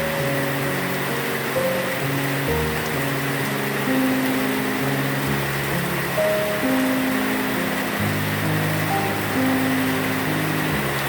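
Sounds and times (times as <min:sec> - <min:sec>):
heavy rain hissing: 0:00.0 - 0:11.0
soft music of held notes: 0:00.0 - 0:11.0.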